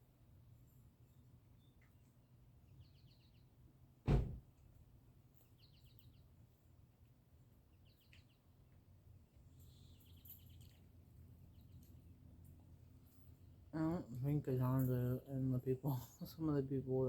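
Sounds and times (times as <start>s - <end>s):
small birds chirping: 1.0s - 3.8s, 5.2s - 17.0s
loud thump: 4.1s - 4.4s.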